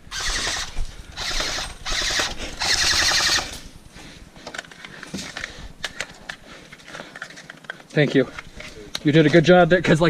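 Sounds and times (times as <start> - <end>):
airsoft rifle full-auto burst: 0.1 - 3.6.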